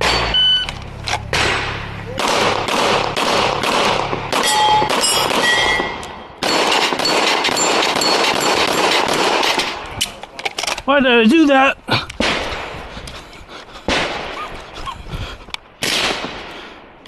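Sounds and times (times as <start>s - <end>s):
steel targets pinging: 0.0s - 9.7s
rifle shots: 1.2s - 9.9s, 12.2s - 12.8s, 13.9s - 14.4s, 15.8s - 16.6s.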